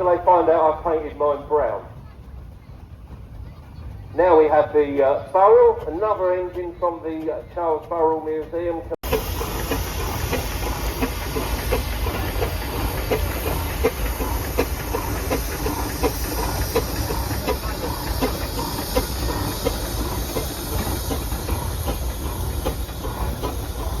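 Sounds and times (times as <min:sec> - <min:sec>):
steam engine hissing and rumbling: 0:00.0 - 0:24.0.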